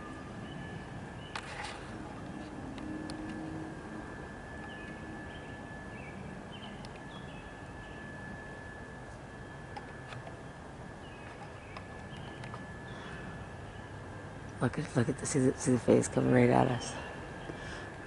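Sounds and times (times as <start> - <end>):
thin steady whine: 0.0 - 18.0
faint bird chirps: 4.2 - 14.2.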